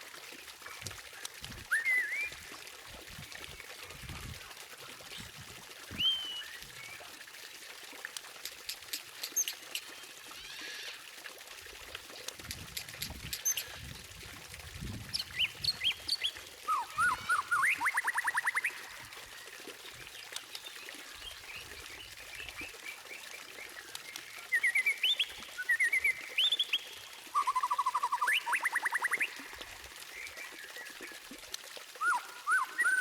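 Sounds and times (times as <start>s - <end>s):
bird whistling song: 1.7s - 2.4s, 5.9s - 6.8s, 27.4s - 29.3s, 32.0s - 33.0s
high clicking bird chatter: 8.1s - 10.1s, 12.2s - 13.8s.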